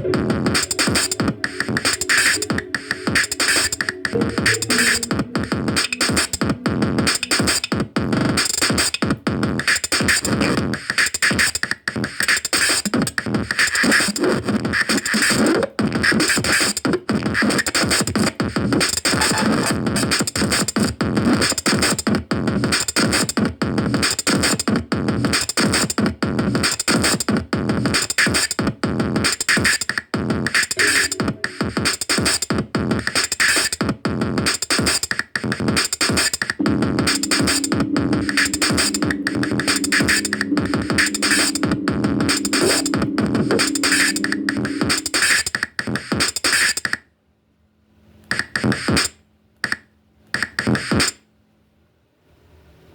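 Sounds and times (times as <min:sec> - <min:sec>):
electronic dance music: 0:00.0 - 0:07.6, 0:36.6 - 0:45.4.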